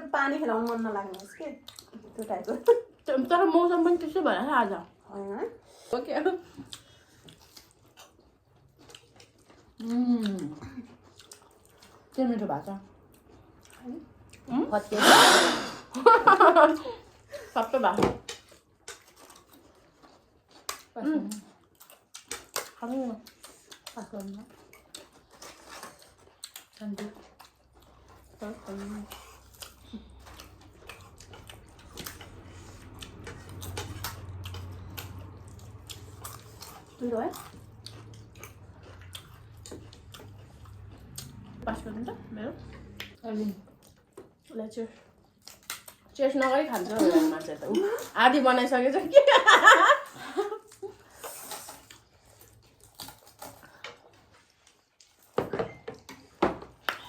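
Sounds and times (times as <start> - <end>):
chewing and food handling clicks: 0.5 - 3.1, 6.5 - 14.5, 18.2 - 48.2.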